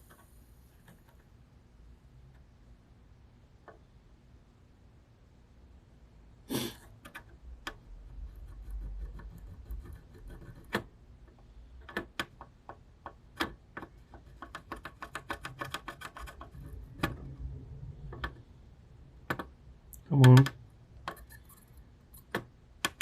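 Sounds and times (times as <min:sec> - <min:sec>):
hand tools clicking on plastic: 0:11.8 - 0:17.2.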